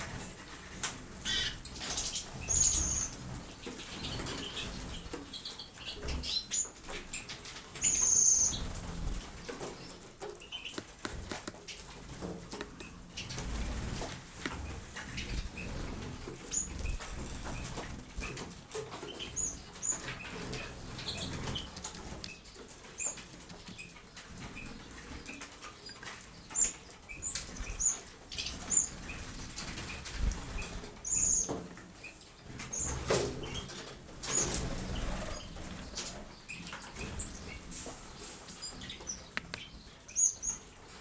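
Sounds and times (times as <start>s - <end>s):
birds fluttering wings in water: 0.0s - 31.8s, 32.4s - 41.0s.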